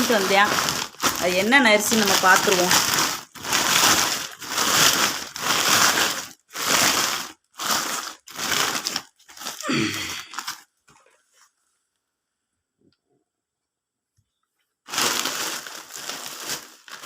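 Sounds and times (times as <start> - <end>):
plastic packaging crinkling: 0.0 - 11.3, 14.9 - 17.0.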